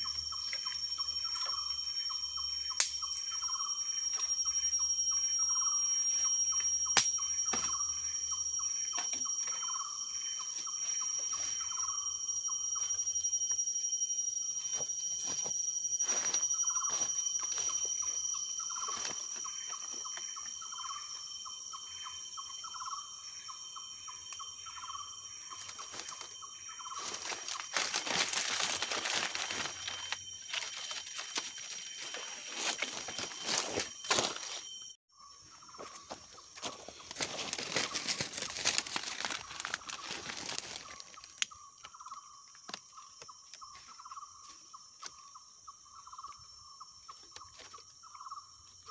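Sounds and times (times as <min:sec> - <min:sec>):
high-pitched insect buzz: 0:00.0 - 0:48.9
loud rustling or crackling: 0:27.0 - 0:34.3, 0:37.1 - 0:41.2.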